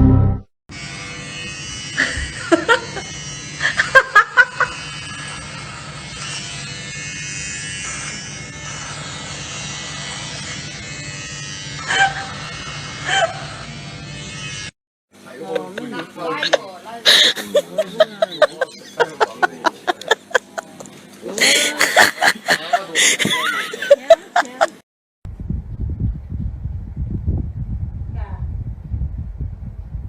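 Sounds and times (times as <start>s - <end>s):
electric buzzing: 0.0s - 14.8s.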